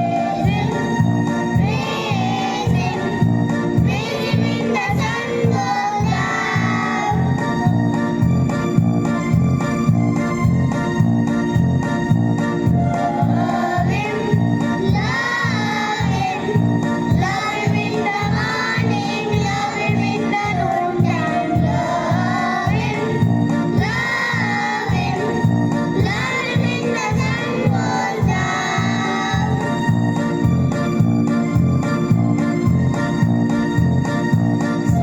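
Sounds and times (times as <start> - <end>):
children singing: 0.0 - 7.8, 12.9 - 30.0
electronic keyboard organ tones: 0.0 - 35.0.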